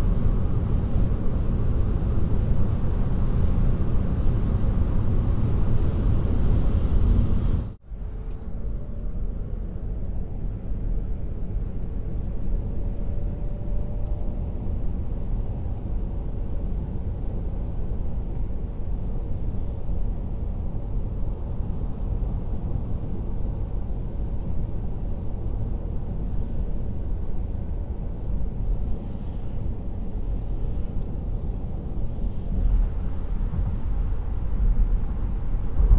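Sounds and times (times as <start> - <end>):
car road and tyre noise: 0.0 - 35.9.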